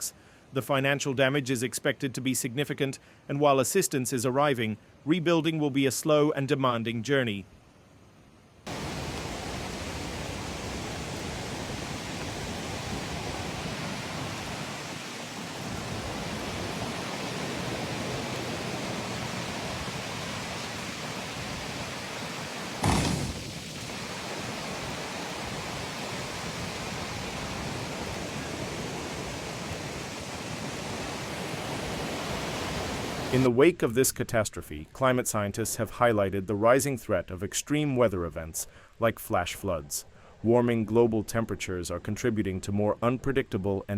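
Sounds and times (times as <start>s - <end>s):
floodwater rushing: 8.7s - 33.5s
loud bump: 22.8s - 23.7s.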